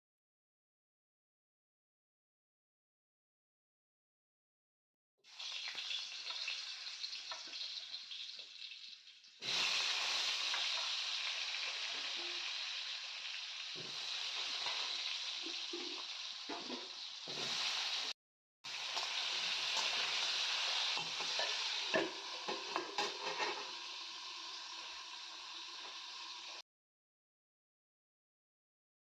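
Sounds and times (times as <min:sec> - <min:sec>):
food sizzling in a pan: 0:05.2 - 0:26.6.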